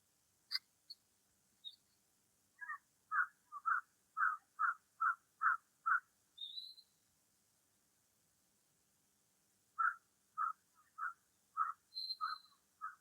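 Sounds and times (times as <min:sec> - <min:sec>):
birds chirping and calling: 0:02.6 - 0:06.8, 0:09.8 - 0:13.0.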